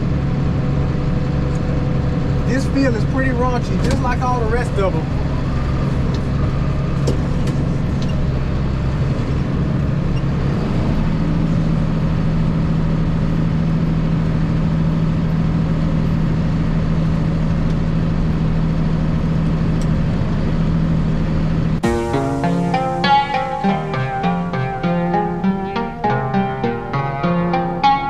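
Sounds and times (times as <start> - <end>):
tractor engine running under load: 0.0 - 21.9.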